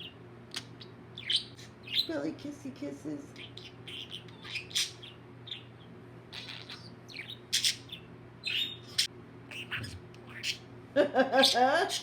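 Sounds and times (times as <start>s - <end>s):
budgerigar chirping: 0.0s - 2.1s, 3.4s - 10.7s.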